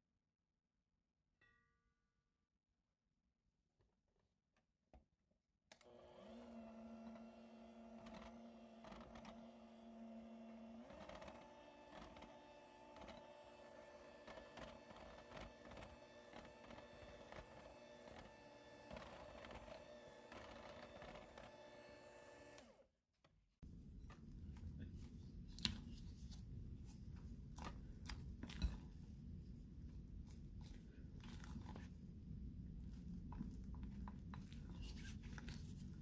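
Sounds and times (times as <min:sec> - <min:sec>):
electric mixer motor running: 0:05.8 - 0:22.8.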